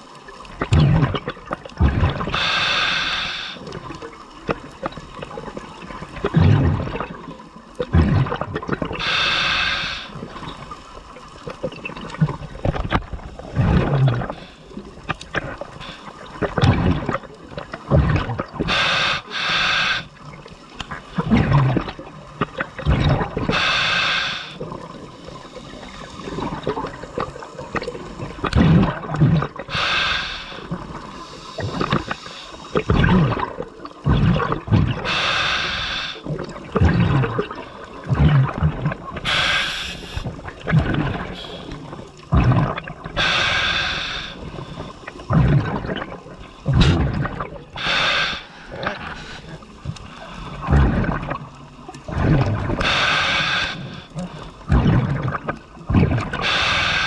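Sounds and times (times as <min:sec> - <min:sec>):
bubbles burbling underwater: 0:00.0 - 0:02.6, 0:03.2 - 0:19.4, 0:20.0 - 0:23.7, 0:24.4 - 0:57.0
hissing regulator inhalation: 0:02.2 - 0:03.7, 0:09.0 - 0:10.3, 0:15.6 - 0:16.3, 0:18.7 - 0:20.2, 0:23.4 - 0:28.4, 0:29.7 - 0:33.4, 0:35.0 - 0:36.3, 0:39.2 - 0:42.4, 0:43.2 - 0:45.6, 0:46.5 - 0:51.2, 0:52.6 - 0:54.8, 0:56.4 - 0:57.0.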